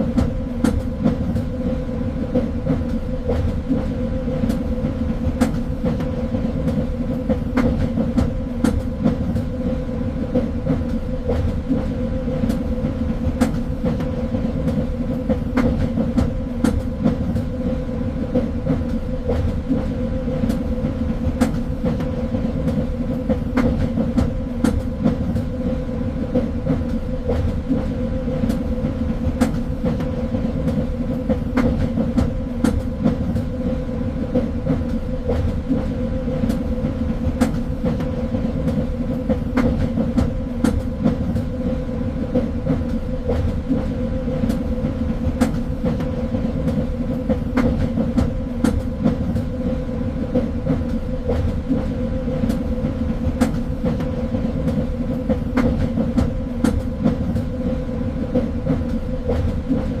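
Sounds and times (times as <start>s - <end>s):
train rumbling on rails: 0.0s - 60.0s.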